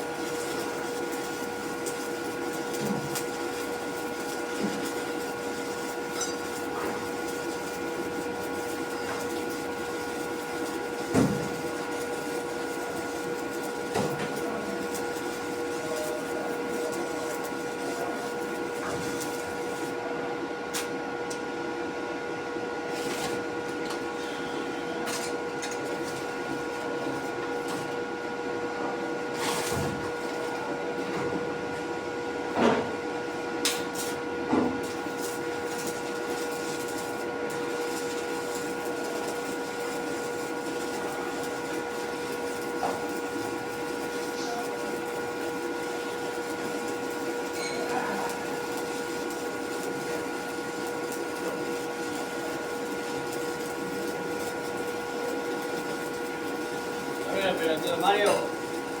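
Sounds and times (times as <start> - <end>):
steady machine hum: 0.0 - 22.9, 34.3 - 59.0.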